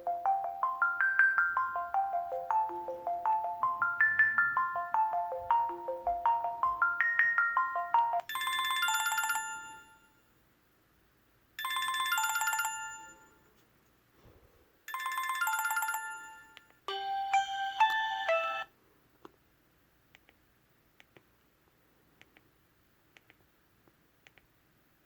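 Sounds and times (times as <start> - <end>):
phone ringtone melody: 0.0 - 10.2, 11.6 - 13.4, 14.9 - 18.7
bright chime ringing: 0.3 - 10.1.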